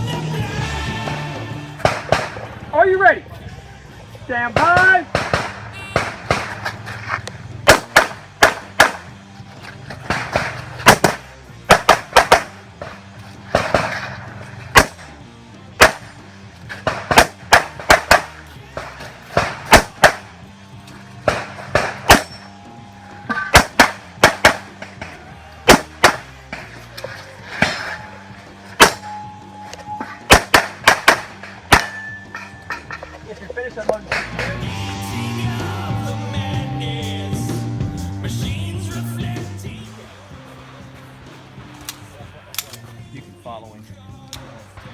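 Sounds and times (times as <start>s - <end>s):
background music: 0.0s - 44.9s
handgun shots: 1.8s - 2.5s, 4.6s - 6.8s, 7.7s - 9.1s, 10.0s - 15.1s, 15.8s - 20.3s, 21.3s - 22.4s, 23.3s - 26.8s, 28.7s - 29.2s, 30.2s - 32.2s.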